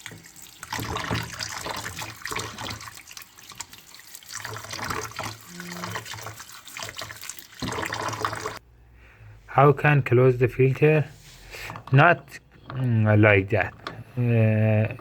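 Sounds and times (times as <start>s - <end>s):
tap water running and splashing: 0.0s - 8.6s.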